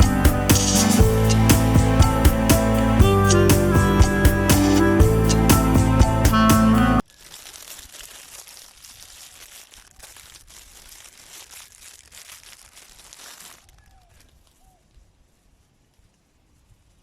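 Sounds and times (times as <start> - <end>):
background music: 0.0 - 7.0
faint crackling and rustling: 7.0 - 17.0.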